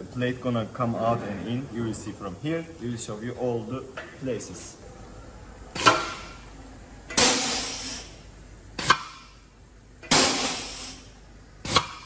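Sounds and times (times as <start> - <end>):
air hissing: 5.7 - 6.5, 7.1 - 9.4, 10.0 - 12.0.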